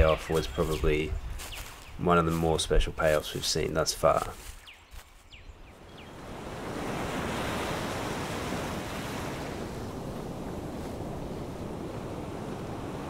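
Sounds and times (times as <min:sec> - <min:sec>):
ocean surf washing onto beach: 0:06.1 - 0:13.0.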